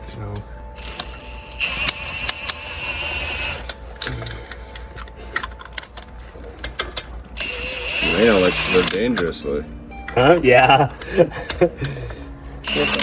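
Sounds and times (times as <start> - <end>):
sharp mechanical clicks: 0.8 - 3.8, 7.4 - 9.0, 12.5 - 13.0.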